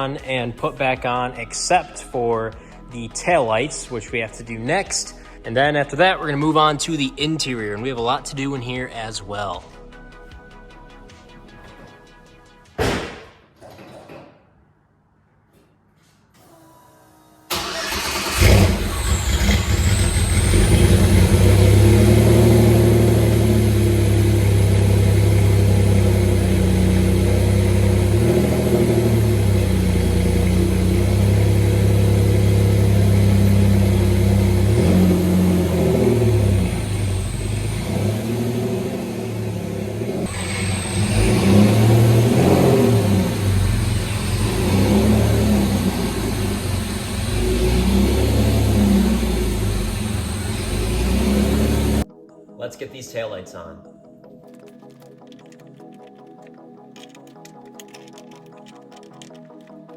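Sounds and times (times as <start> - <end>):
car engine starting and running: 17.5 - 52.1, 54.5 - 59.9.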